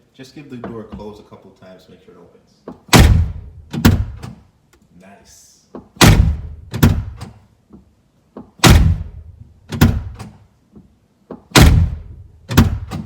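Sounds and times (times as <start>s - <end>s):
car door thunks: 2.7s - 4.4s, 5.8s - 7.4s, 8.4s - 10.4s, 11.3s - 13.0s.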